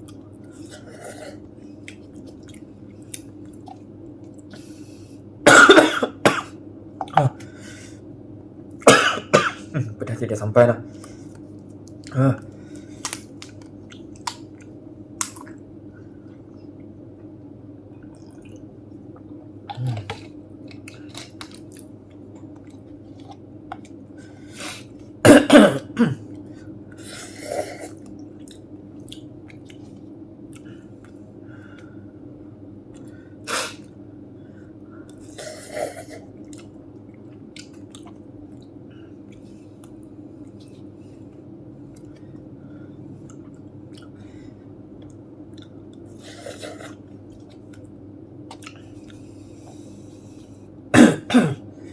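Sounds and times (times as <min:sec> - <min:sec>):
person chewing: 0:00.0 - 0:04.5, 0:10.9 - 0:15.6, 0:18.0 - 0:24.0, 0:27.2 - 0:31.2, 0:35.1 - 0:40.9, 0:43.2 - 0:44.2, 0:45.0 - 0:50.4
person clearing throat: 0:05.5 - 0:07.5, 0:08.9 - 0:10.0, 0:12.1 - 0:12.5, 0:25.2 - 0:26.3, 0:50.9 - 0:51.6
person coughing: 0:05.5 - 0:07.5, 0:08.9 - 0:10.0, 0:25.2 - 0:26.3, 0:50.9 - 0:51.7.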